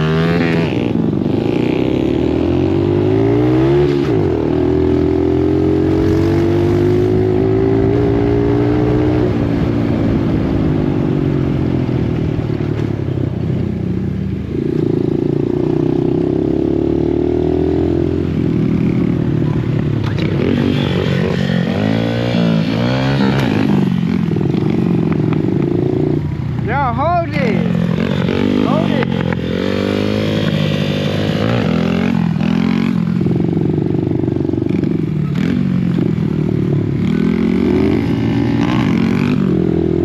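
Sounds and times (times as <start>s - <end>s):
dirt bike engine revving: 0.0s - 9.6s, 20.0s - 33.4s, 34.7s - 40.0s.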